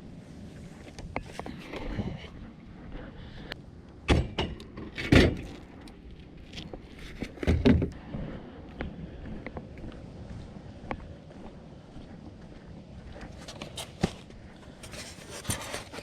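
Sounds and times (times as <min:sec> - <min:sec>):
junk thudding and rattling: 0:07.3 - 0:08.0.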